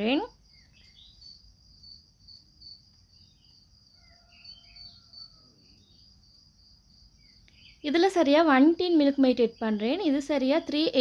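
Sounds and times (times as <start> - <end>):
bird chirps: 0.0 - 6.2, 7.1 - 8.5
crickets trilling: 0.0 - 11.0.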